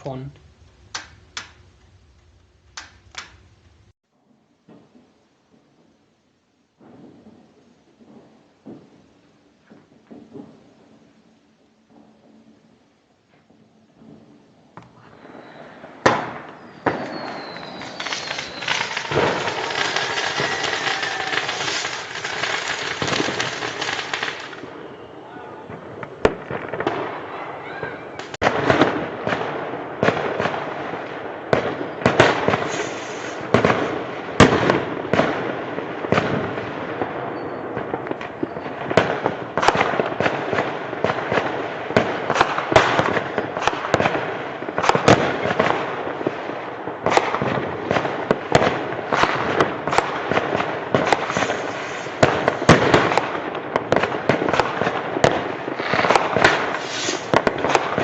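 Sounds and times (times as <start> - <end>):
fireworks and firecrackers banging: 0.0 - 58.0.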